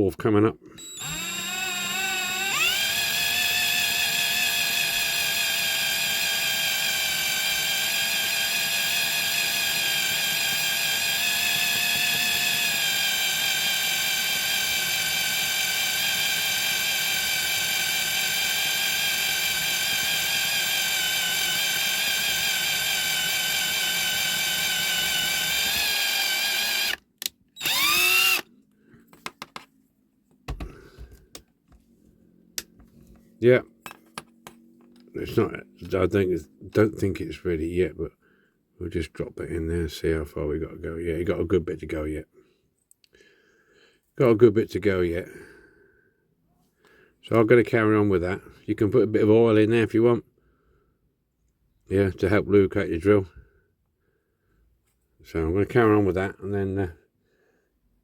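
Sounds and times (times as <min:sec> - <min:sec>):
electric drill whining: 0:00.8 - 0:28.5.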